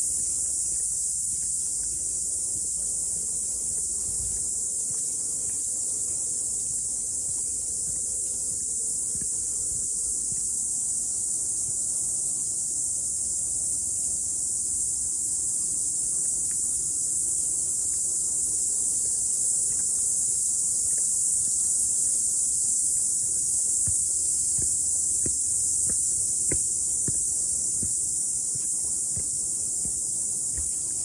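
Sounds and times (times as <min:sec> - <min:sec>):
cicadas singing: 0:00.0 - 0:31.0.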